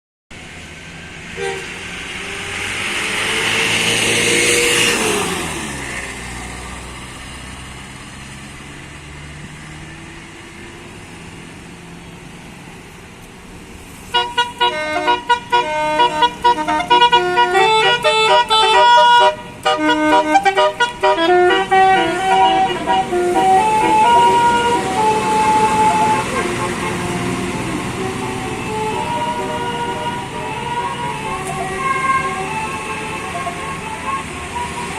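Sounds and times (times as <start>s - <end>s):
vehicle passing by: 0.4s - 12.9s, 14.8s - 34.9s
musical bus horn melody: 1.4s - 1.9s, 14.1s - 34.9s.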